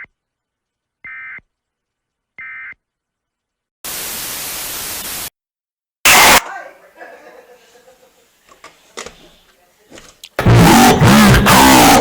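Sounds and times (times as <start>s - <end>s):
loud white-noise static: 3.9s - 5.3s, 6.1s - 6.4s, 10.4s - 12.0s.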